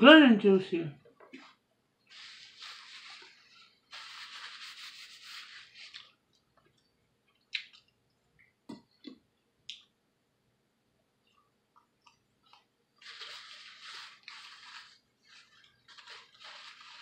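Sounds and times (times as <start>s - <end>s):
mouth clicks and smacks: 6.0s - 9.9s.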